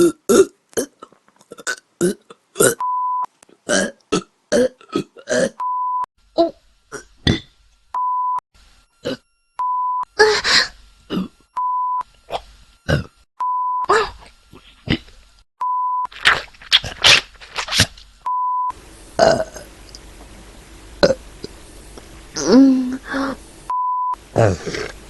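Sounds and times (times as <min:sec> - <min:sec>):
short burps: 0:06.9 - 0:07.5, 0:19.2 - 0:19.7, 0:21.0 - 0:21.5
brief steady beep: 0:15.6 - 0:16.1.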